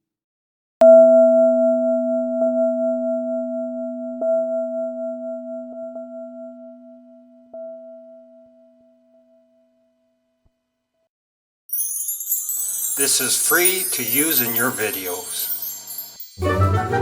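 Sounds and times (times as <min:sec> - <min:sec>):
bell-like metal tone: 0:11.7 - 0:17.0.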